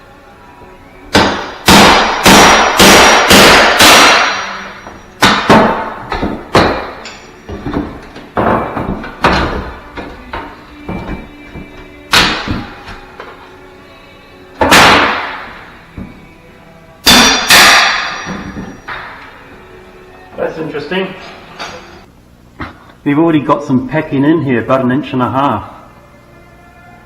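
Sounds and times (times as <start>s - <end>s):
hammer blows: 1.1s - 7.9s.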